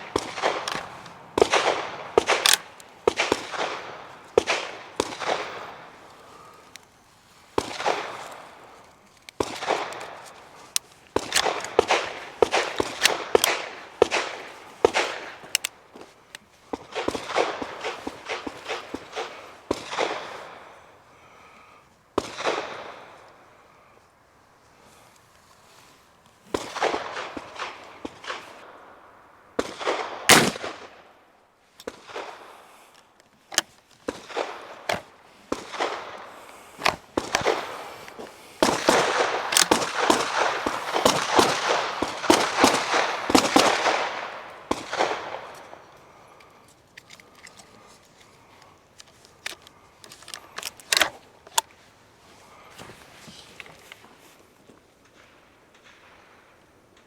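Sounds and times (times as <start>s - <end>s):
rifle shot with ringing tail: 29.7s - 30.9s.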